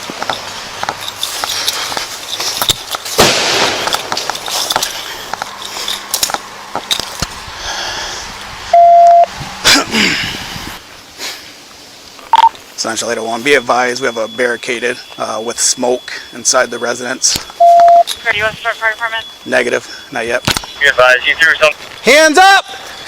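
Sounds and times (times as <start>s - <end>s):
clicks and crackling: 0.0s - 7.3s, 20.4s - 21.0s
police radio beep: 8.7s - 9.3s, 12.2s - 23.0s.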